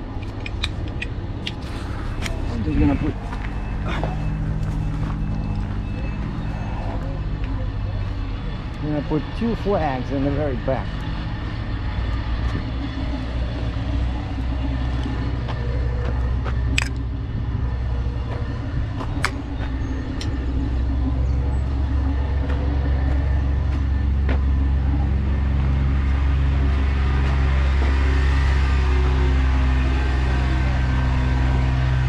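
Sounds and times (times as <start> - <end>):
sharp metallic clicks: 0.0 - 1.6, 16.7 - 17.1
truck diesel engine idling: 0.0 - 32.0.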